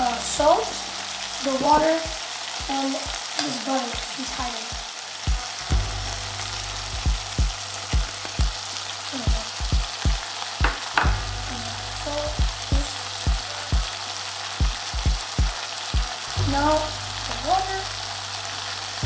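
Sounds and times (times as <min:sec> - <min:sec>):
food sizzling in oil: 0:00.0 - 0:19.0
spoon knocking pot: 0:10.1 - 0:11.2.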